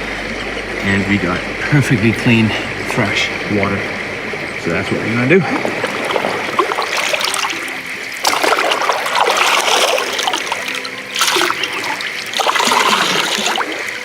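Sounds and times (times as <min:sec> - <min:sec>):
river flowing: 0:00.0 - 0:14.0
water splashing into container: 0:04.9 - 0:14.0.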